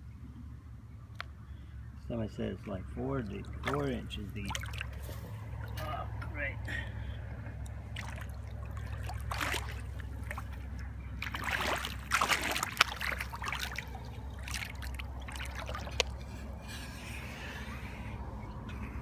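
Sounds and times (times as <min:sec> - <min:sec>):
water sloshing and trickling: 0:02.3 - 0:19.0.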